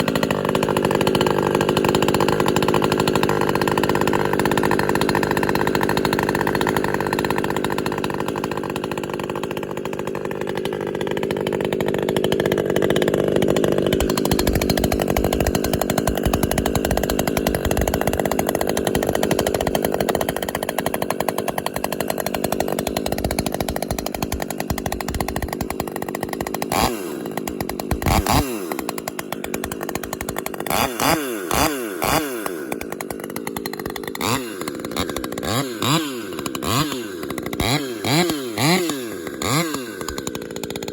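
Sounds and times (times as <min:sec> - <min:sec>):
chainsaw running at high revs: 0:00.0 - 0:40.9.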